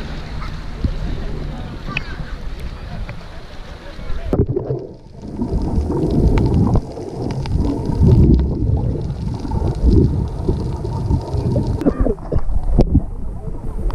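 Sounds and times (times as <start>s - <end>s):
low uneven rumble: 0.0s - 13.9s
wind buffeting microphone: 4.3s - 13.9s.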